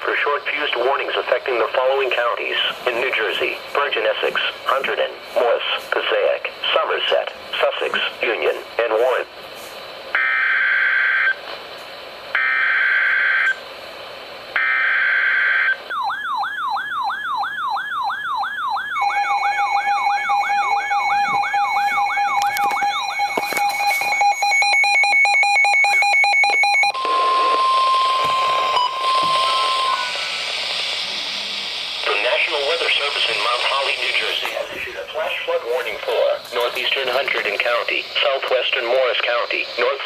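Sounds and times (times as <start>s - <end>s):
wailing siren-like alarm: 10.1s - 11.4s, 12.3s - 13.6s, 14.6s - 34.0s
steady warning alert tone: 15.4s - 39.6s
pulsing beeps: 15.9s - 34.3s
screeching data bursts: 18.4s - 40.0s.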